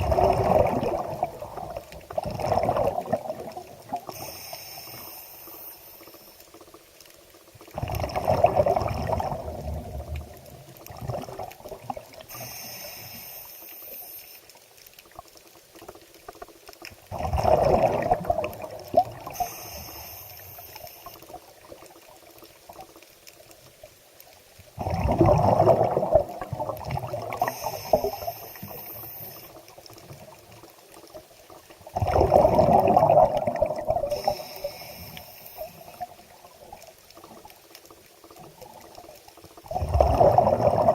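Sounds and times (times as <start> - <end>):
water sloshing and splashing: 0.0 - 4.2, 6.7 - 12.4, 14.9 - 19.4, 21.2 - 28.0, 29.6 - 34.7, 35.5 - 40.9
water trickling: 0.0 - 4.3, 6.0 - 12.6, 14.2 - 40.9.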